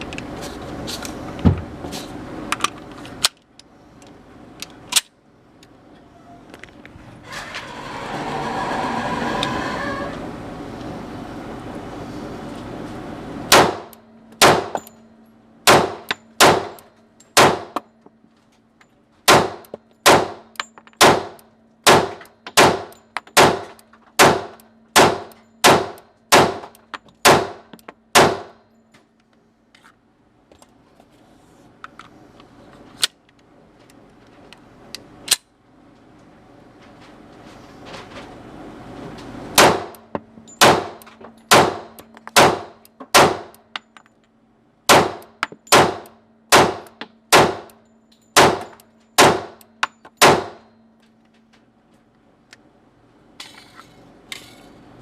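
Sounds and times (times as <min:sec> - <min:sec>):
gunshots: 0:13.5 - 0:14.7, 0:15.7 - 0:16.8, 0:17.4 - 0:17.8, 0:19.3 - 0:20.4, 0:21.0 - 0:26.6, 0:28.2 - 0:28.5, 0:40.6 - 0:43.5, 0:44.9 - 0:47.7, 0:48.4 - 0:49.6, 0:50.2 - 0:50.6.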